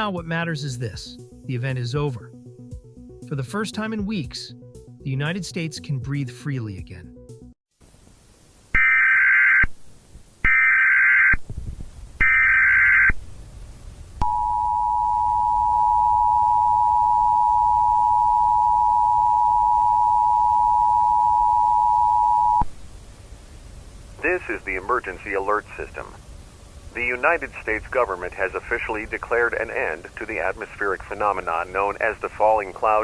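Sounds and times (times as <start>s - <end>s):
short data bursts: 8.7s - 9.8s, 10.4s - 11.4s
two-tone attention signal: 14.2s - 22.6s.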